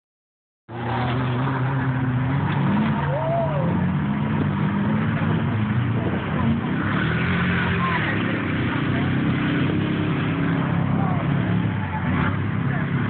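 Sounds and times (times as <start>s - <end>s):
vehicle engine running: 0.8s - 13.0s.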